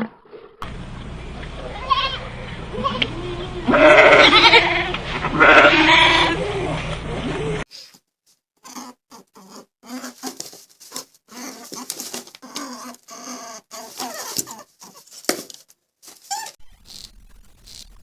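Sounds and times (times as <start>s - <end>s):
faint rustling: 13.7s - 16.6s
animal squeaky calls: 16.3s - 17.1s.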